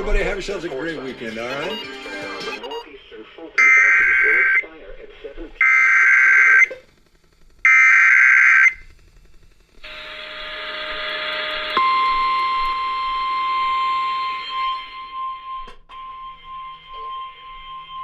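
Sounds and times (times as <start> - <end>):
radio hiss: 0.0 - 14.9
digital data burst screech: 3.6 - 4.7, 5.6 - 6.8, 7.6 - 8.9
steady attention tone: 3.6 - 17.9.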